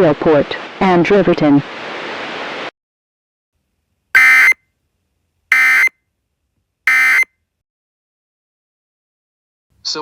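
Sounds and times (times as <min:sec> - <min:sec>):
digital data bursts: 0:05.5 - 0:05.9, 0:06.9 - 0:07.2.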